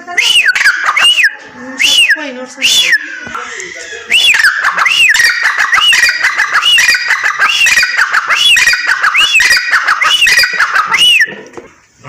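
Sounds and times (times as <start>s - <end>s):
francolin calling: 0.0s - 3.2s, 4.1s - 11.4s
harsh clicking bird notes: 4.2s - 11.4s.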